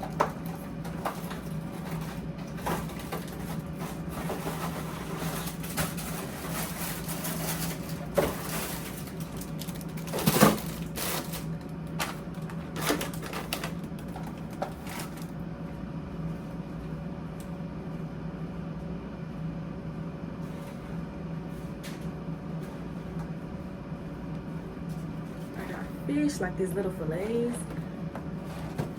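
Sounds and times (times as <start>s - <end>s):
steady low hum: 0.0s - 28.9s.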